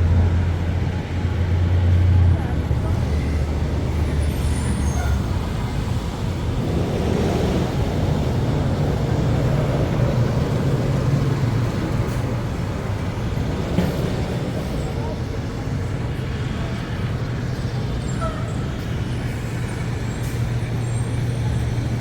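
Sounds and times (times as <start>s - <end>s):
road noise: 0.0s - 22.0s
traffic engine hum: 0.0s - 22.0s.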